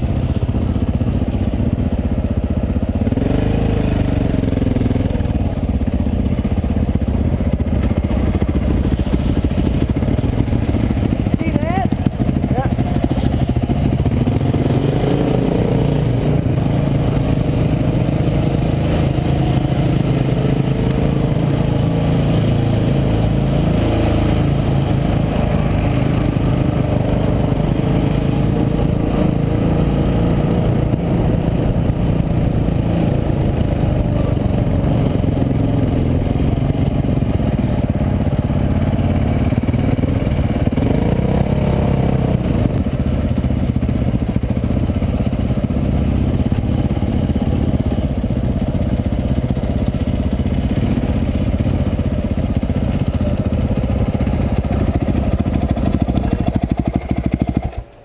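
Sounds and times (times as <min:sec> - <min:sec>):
dirt bike engine running: 0:00.0 - 0:58.0.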